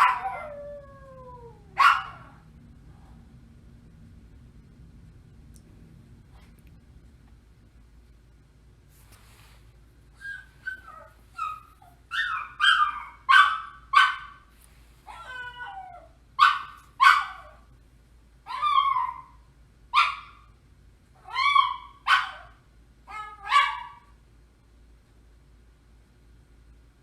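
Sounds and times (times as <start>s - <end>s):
dog barking excitedly: 0.0s - 0.5s, 1.7s - 2.4s, 10.7s - 14.5s, 15.1s - 17.6s, 20.0s - 20.5s, 21.2s - 24.1s
dog whining call: 10.2s - 13.6s, 15.1s - 16.1s.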